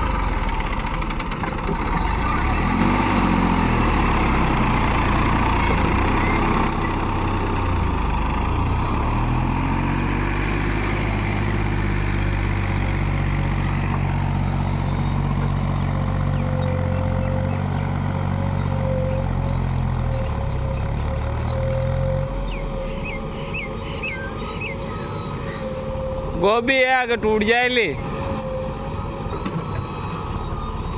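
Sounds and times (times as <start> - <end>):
backhoe diesel engine: 0.0 - 30.9.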